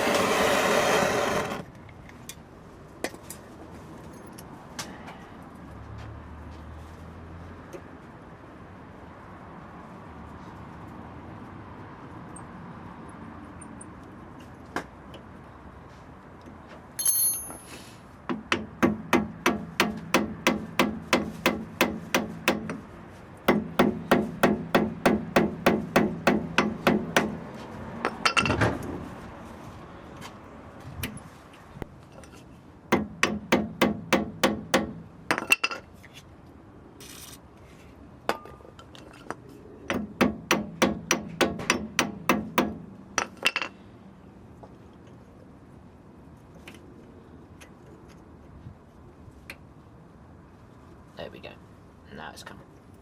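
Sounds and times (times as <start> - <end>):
hammer tapping on metal: 39.9 - 42.8.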